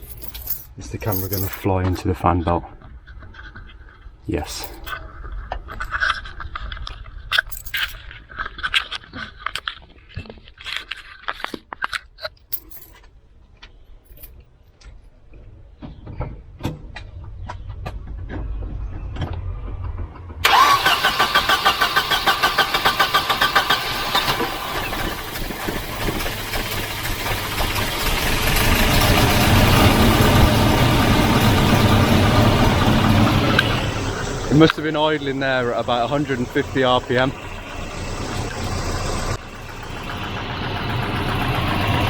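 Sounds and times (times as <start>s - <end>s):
clicks and handling noises: 3.0s - 20.4s
car engine cranking and starting: 16.8s - 42.0s.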